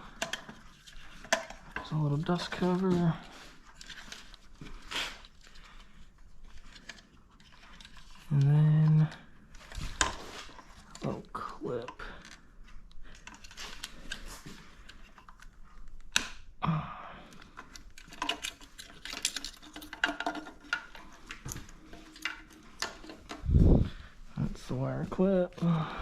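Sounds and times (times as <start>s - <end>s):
small clicks and rattles: 0.0s - 3.0s, 3.6s - 11.1s, 17.3s - 23.5s.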